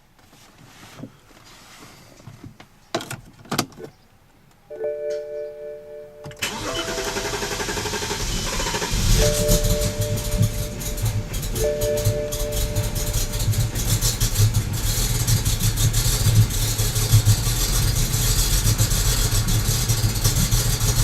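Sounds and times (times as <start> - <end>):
steady whine: 6.2 - 21.0
engine starting: 6.4 - 14.6
starter motor cranking: 6.4 - 21.0.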